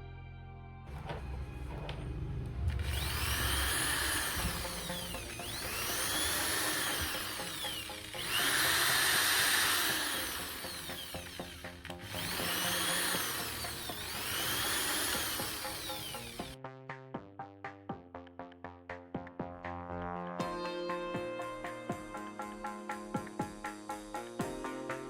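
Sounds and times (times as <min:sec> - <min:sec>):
electric drill motor whine: 0:00.9 - 0:16.6.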